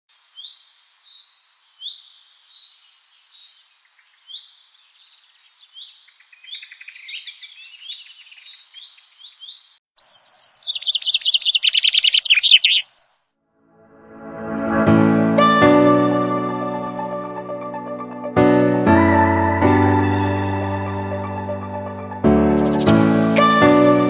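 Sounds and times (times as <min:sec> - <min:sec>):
birds chirping: 0:00.1 - 0:13.2
rapid chattering bird trill: 0:06.3 - 0:12.9.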